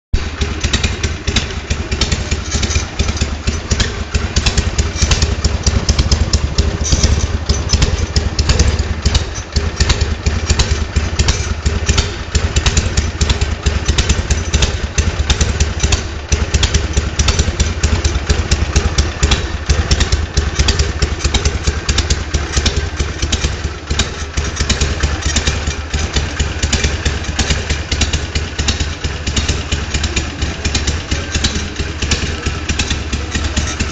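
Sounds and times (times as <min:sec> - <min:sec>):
motorcycle engine idling: 0:00.2 - 0:33.9.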